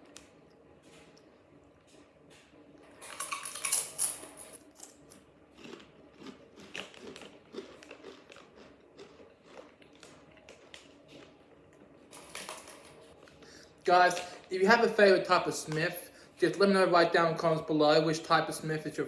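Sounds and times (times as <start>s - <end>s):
potato chips crunching: 3.0s - 12.6s.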